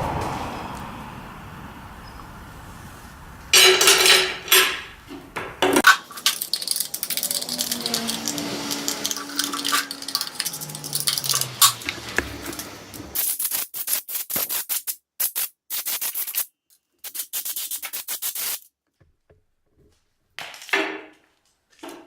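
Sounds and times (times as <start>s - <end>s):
scraping rattle: 3.6s - 5.0s, 5.8s - 13.2s
chainsaw parts clicking and rattling: 5.8s - 12.7s.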